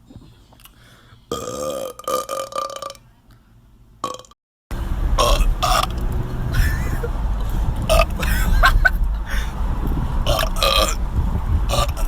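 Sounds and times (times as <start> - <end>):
man belching loudly: 1.3 - 3.0, 5.2 - 6.0, 7.8 - 8.4, 10.2 - 11.0, 11.7 - 12.0.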